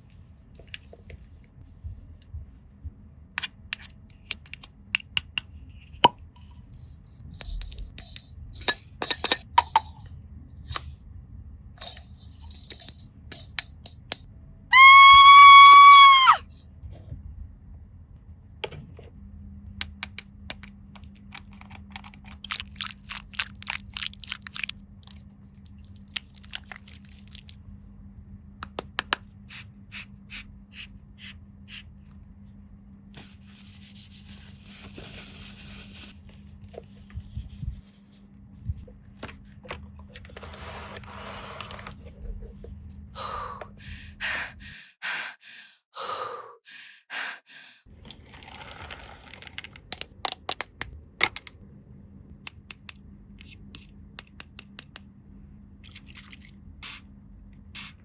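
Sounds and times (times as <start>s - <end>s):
low steady hum: 0.0s - 4.9s, 50.0s - 58.0s
plastic toy pieces clicking: 48.5s - 51.6s.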